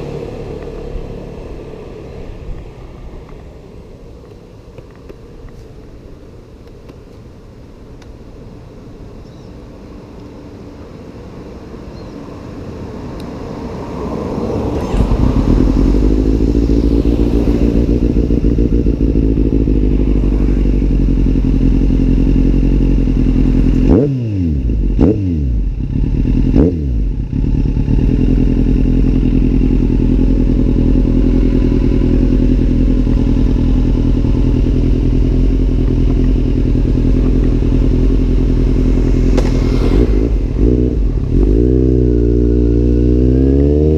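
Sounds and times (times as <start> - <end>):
motorcycle engine running: 14.8 - 43.9.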